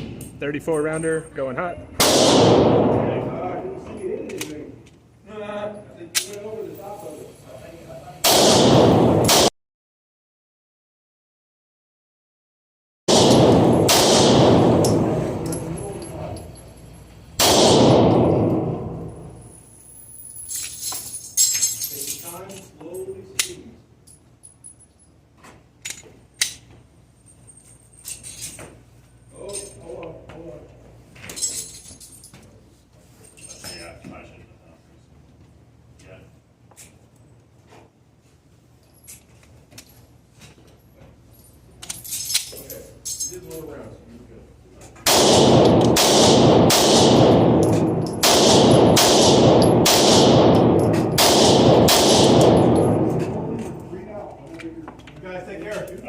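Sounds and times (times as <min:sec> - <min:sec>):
pistol gunshots echoing: 0:02.0 - 0:03.4, 0:08.2 - 0:09.5, 0:13.1 - 0:15.8, 0:17.4 - 0:19.3, 0:45.1 - 0:53.8.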